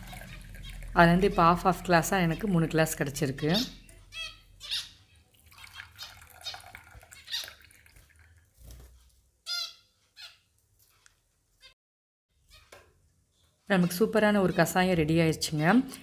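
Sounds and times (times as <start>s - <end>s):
finches chirping: 0.2s - 7.5s, 9.5s - 10.5s.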